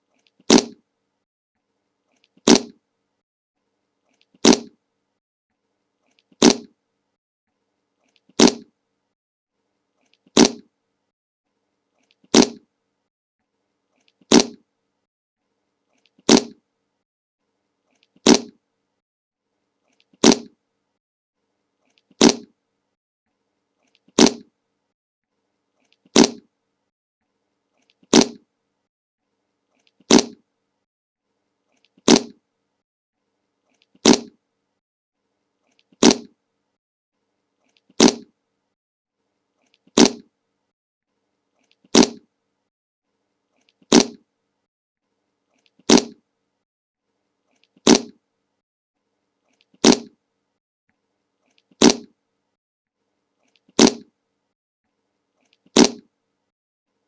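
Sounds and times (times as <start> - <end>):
fart sound effect: 0.5 - 0.8, 2.4 - 2.8, 4.4 - 4.8, 6.4 - 6.8, 8.4 - 8.7, 10.3 - 10.7, 12.3 - 12.6, 14.3 - 14.6, 16.2 - 16.6, 18.2 - 18.6, 20.2 - 20.6, 22.2 - 22.5, 24.2 - 24.5, 26.1 - 26.5, 28.1 - 28.4, 30.1 - 30.4, 32.0 - 32.4, 34.0 - 34.4, 36.0 - 36.3, 38.0 - 38.3, 40.0 - 40.3, 41.9 - 42.2, 43.9 - 44.2, 45.9 - 46.2, 47.8 - 48.2, 49.8 - 50.2, 51.8 - 52.1, 53.8 - 54.0, 55.8 - 56.0.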